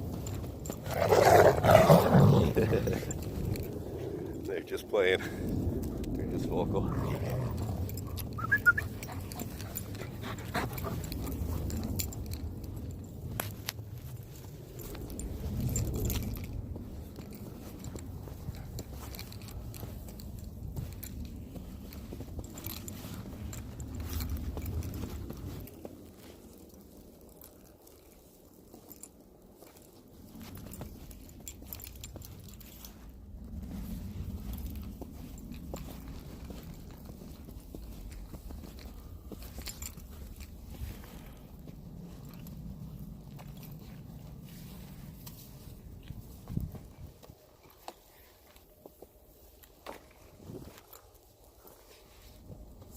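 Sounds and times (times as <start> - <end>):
footsteps crunching through snow: 0.0 - 52.9
dog yelping: 8.4 - 9.3.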